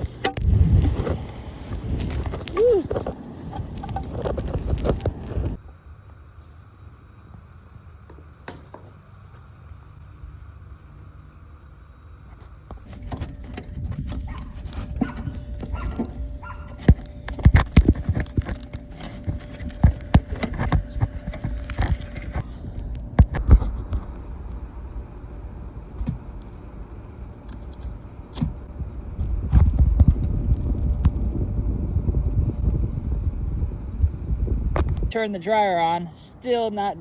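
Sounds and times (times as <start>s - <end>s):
low rumble: 0.0s - 7.1s, 12.9s - 35.1s.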